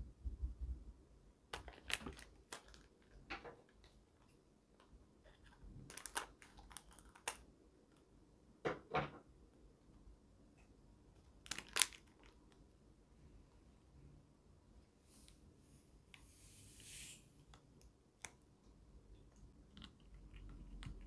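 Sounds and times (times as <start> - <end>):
plastic packaging crinkling: 1.5 - 4.0, 5.3 - 7.4, 11.4 - 12.6.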